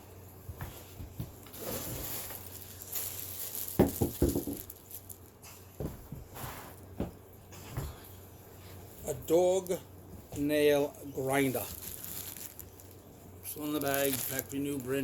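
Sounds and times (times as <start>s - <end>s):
plastic packaging crinkling: 1.3s - 5.7s, 10.4s - 15.0s.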